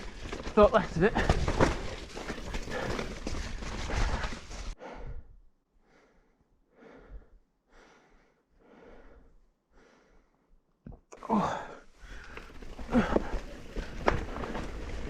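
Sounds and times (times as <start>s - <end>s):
mountain bike riding: 0.0s - 4.8s, 11.4s - 15.0s
heavy breathing: 2.3s - 10.6s.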